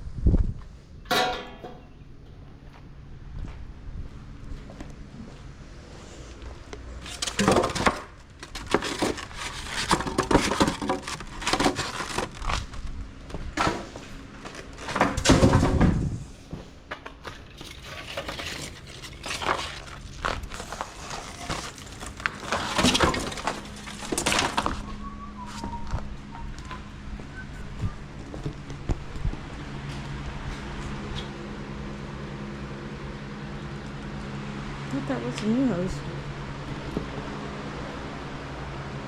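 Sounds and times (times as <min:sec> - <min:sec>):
metal tools clanking: 0:01.1 - 0:02.0.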